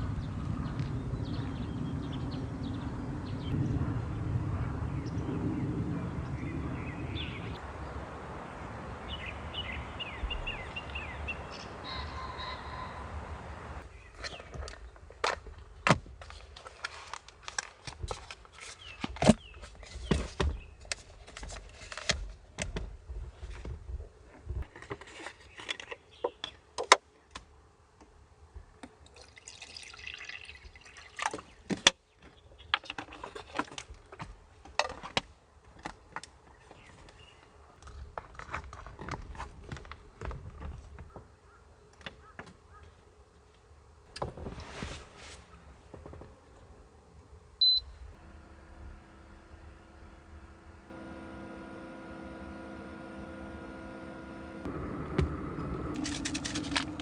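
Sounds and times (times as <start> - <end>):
water dripping and trickling: 29.0 - 31.6.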